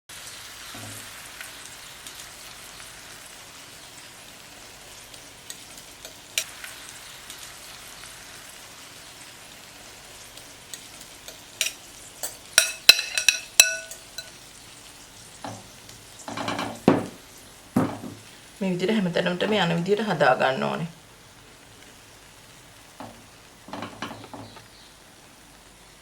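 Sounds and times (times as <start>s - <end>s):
omelette sizzling in a frying pan: 0.1s - 26.0s
metal utensil clinking on pan: 11.3s - 14.4s, 15.4s - 17.2s, 23.0s - 24.6s.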